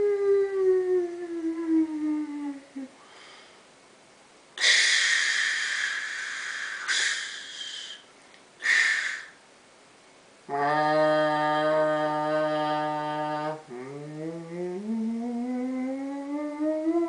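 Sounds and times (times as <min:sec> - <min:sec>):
breathy mouth hisses: 0:04.6 - 0:09.4
falling whistle-like mouth tone: 0:04.6 - 0:09.4.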